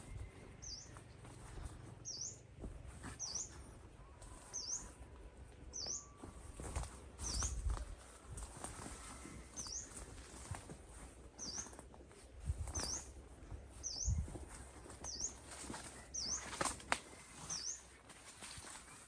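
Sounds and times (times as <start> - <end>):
bird chirping: 0.0 - 1.2, 2.0 - 6.5, 7.2 - 7.7, 9.0 - 10.3, 11.4 - 11.9, 12.7 - 13.2, 13.8 - 18.0.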